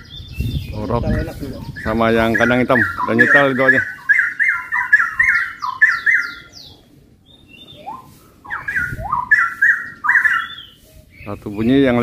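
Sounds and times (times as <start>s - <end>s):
birds singing whistled phrases: 0.0s - 12.0s.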